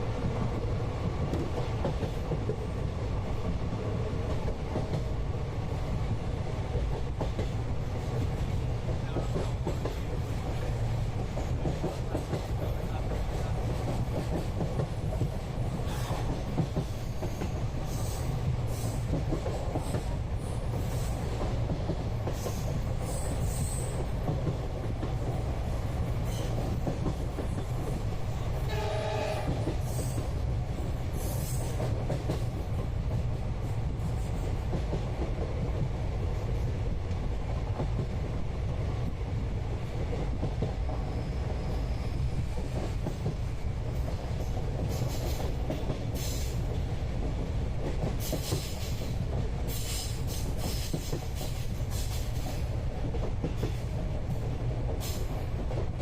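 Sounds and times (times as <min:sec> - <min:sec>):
train rumbling inside carriage: 0:00.0 - 0:56.0
train horn: 0:28.6 - 0:30.1.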